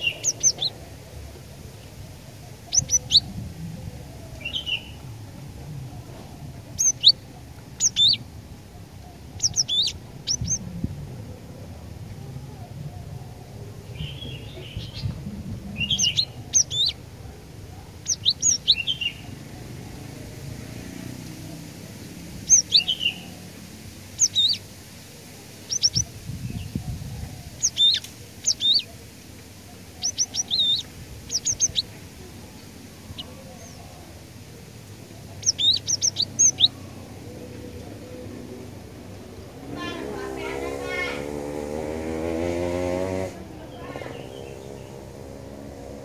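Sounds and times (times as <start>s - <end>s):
low background rumble: 0.0s - 20.7s
bird singing high whistled notes: 24.2s - 24.6s, 27.6s - 28.9s, 30.0s - 31.8s.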